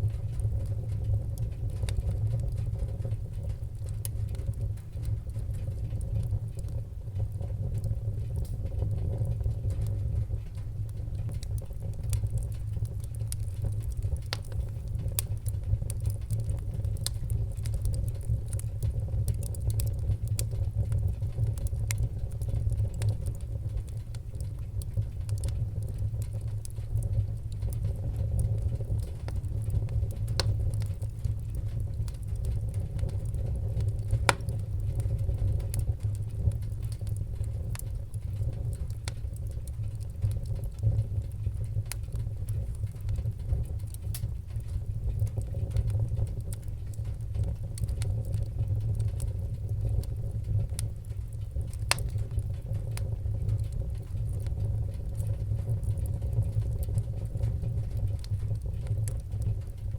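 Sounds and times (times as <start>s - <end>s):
low rumble of flames: 0.0s - 59.9s
wood fire crackling and popping: 0.0s - 59.9s.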